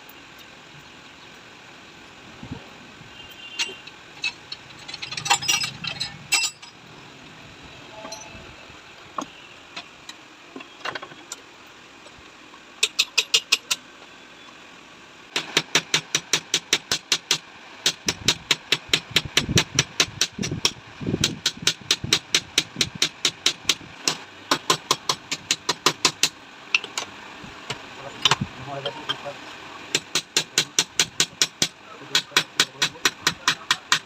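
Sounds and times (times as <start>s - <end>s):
rapid sharp metallic taps: 29.9s - 34.0s.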